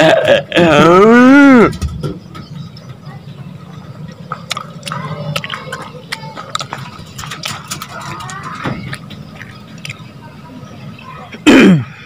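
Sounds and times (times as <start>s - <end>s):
faint voices: 0.0s - 12.0s
handling clicks and crackles: 4.3s - 10.0s.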